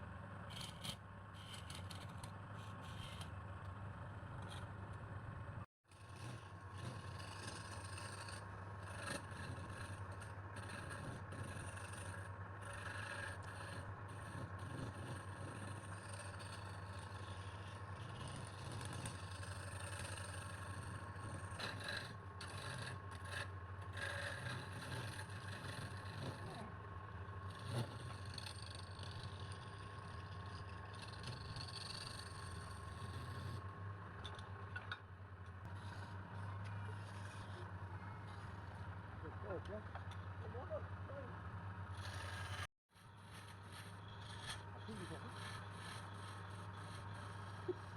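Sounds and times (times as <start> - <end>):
tool scraping spinning wood: 0.0 - 47.9
wood lathe motor humming: 8.9 - 26.7, 35.7 - 47.9.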